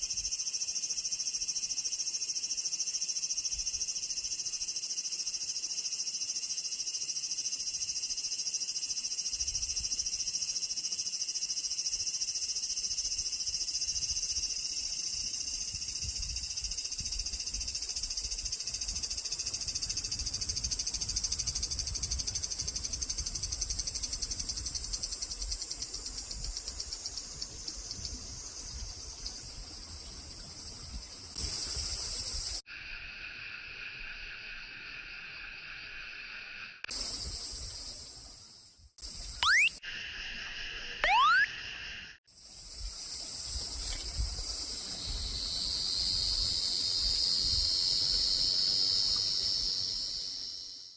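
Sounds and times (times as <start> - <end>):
cicada buzzing: 0.0 - 28.5, 39.1 - 39.8.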